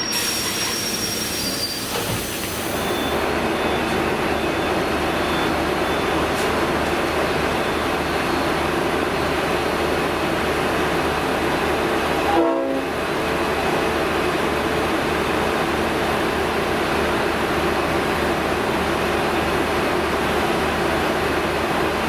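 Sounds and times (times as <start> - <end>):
diesel train idling: 0.0 - 22.0.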